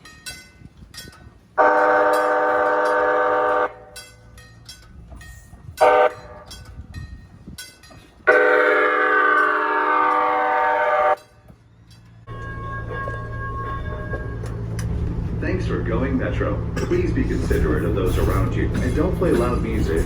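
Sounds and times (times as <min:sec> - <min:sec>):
light-rail car horn: 0:01.6 - 0:04.0, 0:05.8 - 0:06.5, 0:08.2 - 0:11.5, 0:12.3 - 0:15.1.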